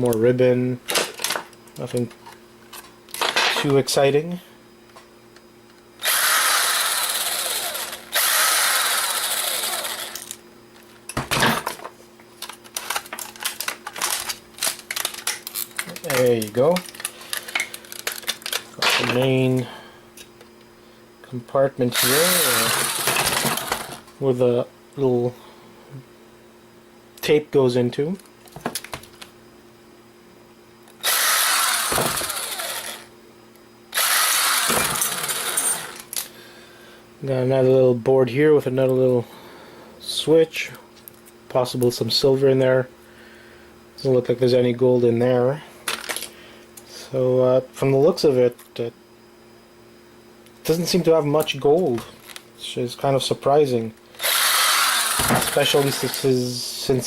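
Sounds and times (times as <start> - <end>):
electric screwdriver running: 6.0 - 10.4, 22.0 - 24.0, 31.0 - 33.1, 33.9 - 36.0, 54.2 - 56.2.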